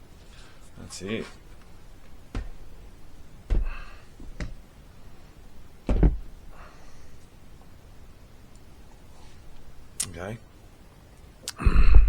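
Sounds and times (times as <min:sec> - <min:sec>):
objects knocking on a workbench: 0:02.3 - 0:02.7, 0:03.5 - 0:04.6, 0:05.9 - 0:06.3.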